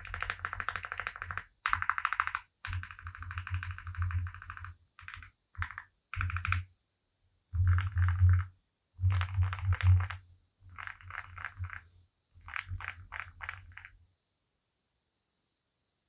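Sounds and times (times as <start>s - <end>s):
mechanical keyboard typing: 0.0s - 6.7s, 7.6s - 11.8s, 12.4s - 14.0s.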